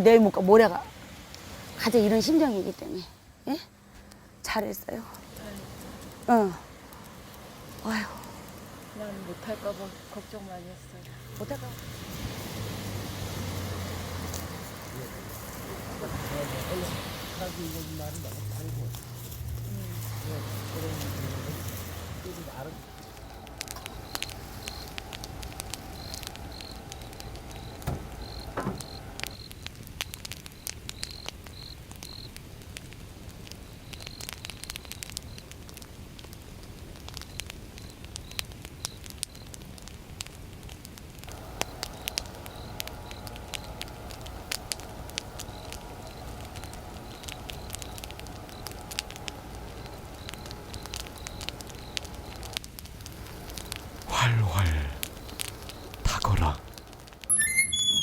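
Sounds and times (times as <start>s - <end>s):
fire crackling and popping: 0.0s - 3.1s, 3.9s - 58.0s
faint steady hum: 21.6s - 29.5s, 41.3s - 57.9s.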